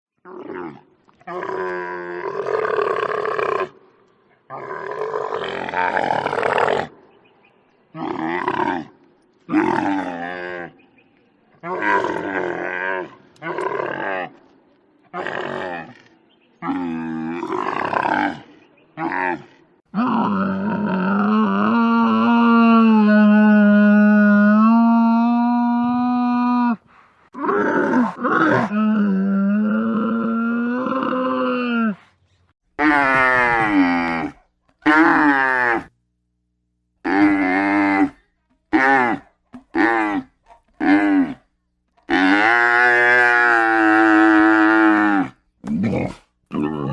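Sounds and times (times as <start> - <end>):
camel calling: 20.0 - 32.2, 37.0 - 46.9.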